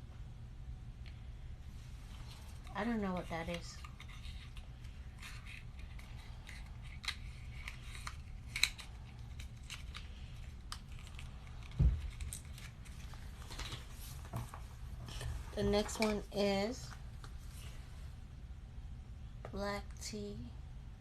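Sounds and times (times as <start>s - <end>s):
packaging clicks and crinkles: 2.2s - 16.2s.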